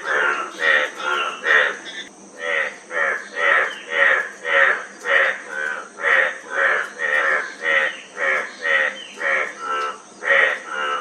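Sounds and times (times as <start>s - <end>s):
frog croaking: 0.0s - 11.0s.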